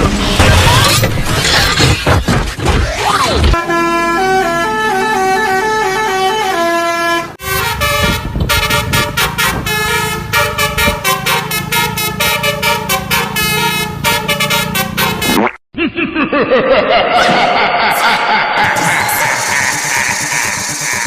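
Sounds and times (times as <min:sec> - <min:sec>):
multi-tone air horn melody: 0:03.6 - 0:15.4.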